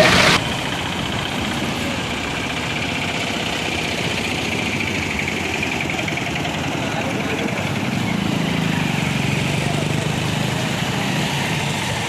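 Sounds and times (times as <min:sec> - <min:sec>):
loud noise cutting off: 0:00.0 - 0:01.4
auto-rickshaw engine running: 0:00.0 - 0:12.0.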